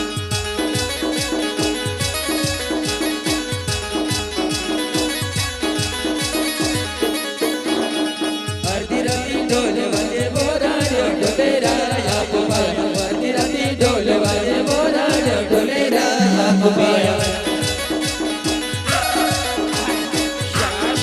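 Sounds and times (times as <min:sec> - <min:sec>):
driving drum beat: 0:00.0 - 0:21.0
brass band dance music: 0:17.4 - 0:21.0.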